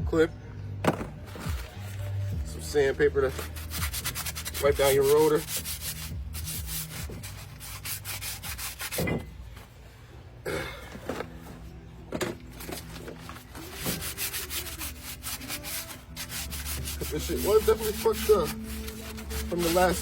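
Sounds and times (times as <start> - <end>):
sandpaper scraping metal: 1.4 - 9.2, 12.6 - 20.0.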